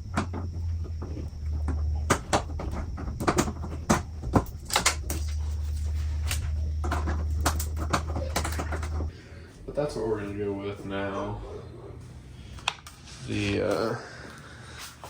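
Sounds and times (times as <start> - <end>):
plastic parts clicking and knocking: 0.0 - 5.6, 6.2 - 9.1
steady low hum: 0.0 - 15.0.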